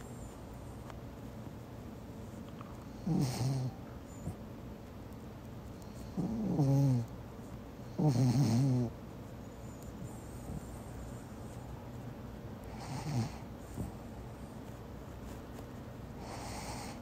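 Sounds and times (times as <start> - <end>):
dog snoring: 2.8 - 4.4, 5.9 - 7.1, 7.8 - 9.0, 10.0 - 11.2, 12.7 - 14.0, 16.2 - 17.0.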